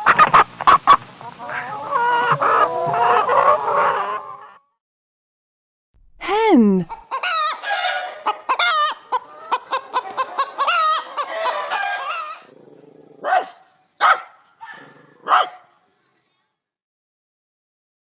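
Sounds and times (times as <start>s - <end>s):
hen clucking and cackling: 0.0s - 4.7s, 6.8s - 13.4s.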